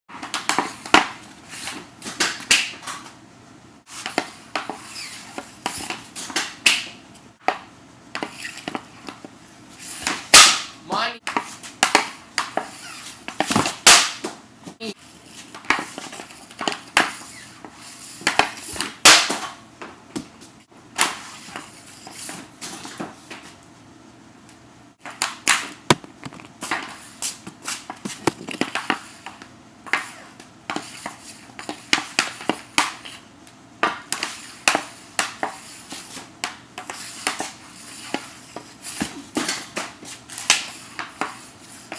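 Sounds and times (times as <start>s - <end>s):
hockey stick slapping pucks: 10.0s - 10.7s, 11.3s - 14.4s, 18.2s - 19.6s, 25.0s - 33.2s, 33.8s - 41.9s
pucks striking targets: 10.0s - 14.4s, 18.2s - 19.6s, 25.0s - 30.1s.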